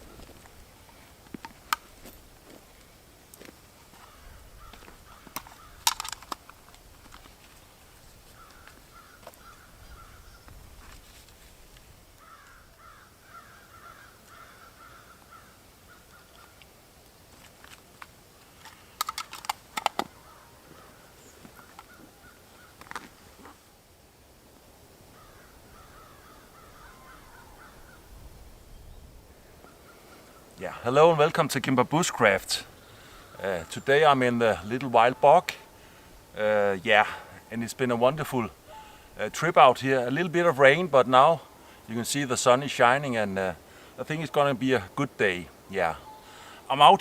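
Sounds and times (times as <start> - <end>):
crows cawing: 3.9 - 6.3, 8.3 - 10.5, 12.2 - 16.6, 19.9 - 23.0, 25.1 - 28.1, 32.7 - 33.8, 38.5 - 39.2, 46.0 - 46.7
sharp clicks: 18.6 - 20.1.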